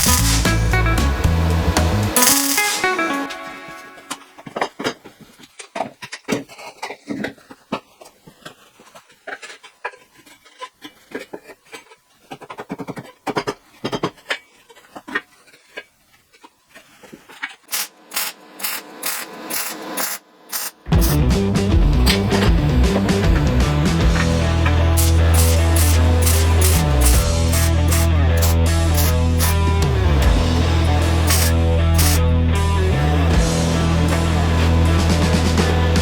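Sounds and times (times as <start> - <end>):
quick tool strokes: 0.0 - 0.6, 17.2 - 21.2, 25.0 - 29.6, 31.2 - 32.2
loud rock music: 0.0 - 4.3, 20.9 - 36.0.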